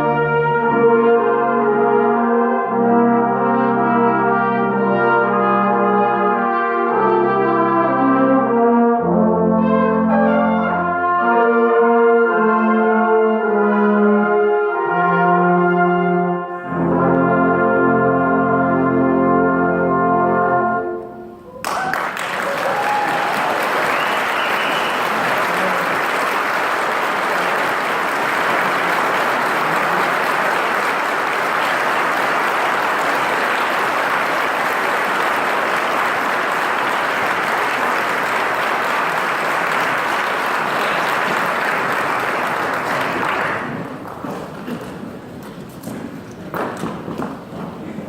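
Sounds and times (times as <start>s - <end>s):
brass ensemble chord: 0.0s - 21.5s, 24.8s - 43.9s
audience applause: 21.6s - 45.5s.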